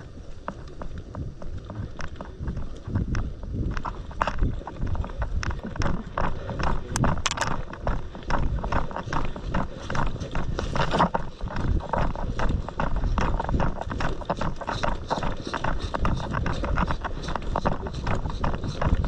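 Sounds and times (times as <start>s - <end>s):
footsteps crunching on rough ground: 0.0s - 19.0s
camera handling rumble: 1.0s - 14.6s.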